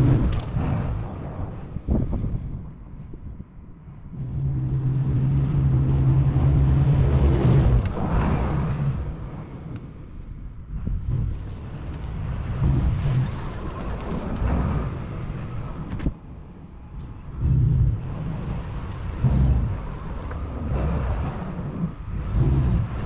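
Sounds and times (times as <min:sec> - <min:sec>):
vehicle low rumble: 0:00.0 - 0:23.0.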